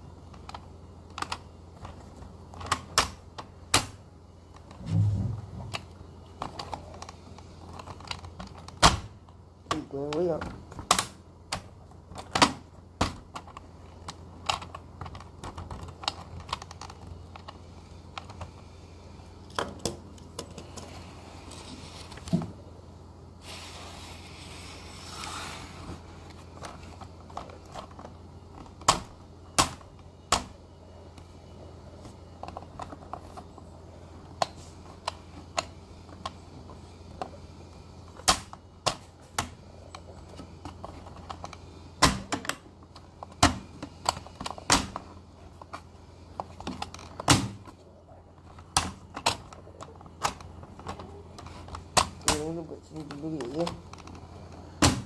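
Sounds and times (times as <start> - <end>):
plastic toys clicking and clacking: 5.7 - 8.8, 9.7 - 18.5
hissing noise: 23.4 - 26.3.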